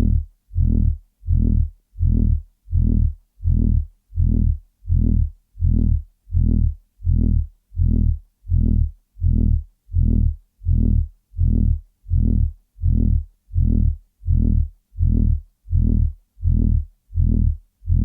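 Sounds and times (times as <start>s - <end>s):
low-pitched pulsing throb: 0.0s - 18.0s.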